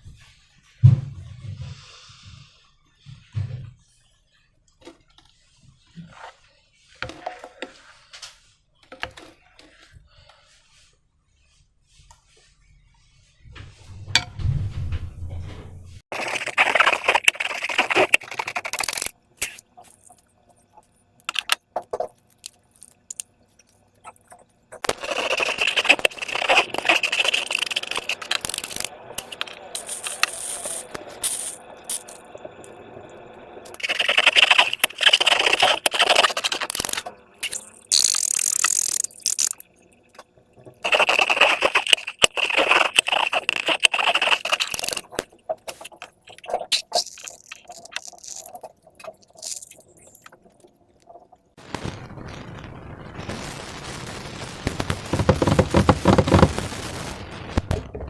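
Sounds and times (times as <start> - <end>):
sticky slime clicking and scraping: 24.8 - 32.2, 33.8 - 39.6, 40.8 - 50.1.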